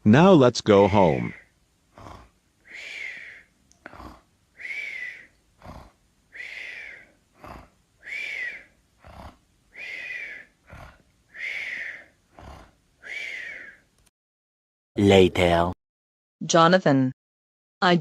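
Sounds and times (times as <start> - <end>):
cartoon snoring with whistle: 0.8 - 13.9.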